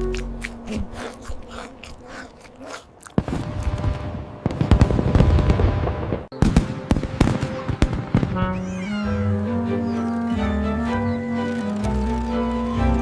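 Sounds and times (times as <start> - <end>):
music: 0.0 - 0.7, 6.4 - 13.0
sharp cracks: 2.4 - 8.7.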